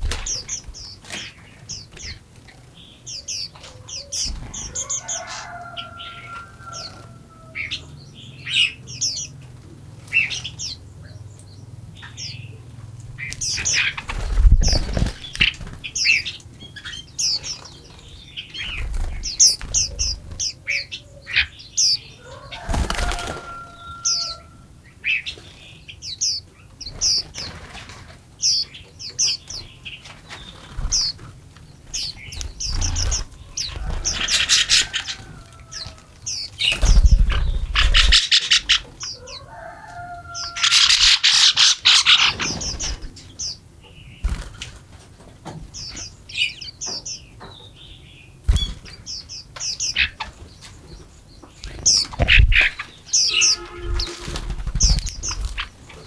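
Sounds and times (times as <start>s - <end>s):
songbirds chirping: 0.0s - 56.0s
rapid wing fluttering: 13.9s - 15.9s, 32.6s - 38.8s.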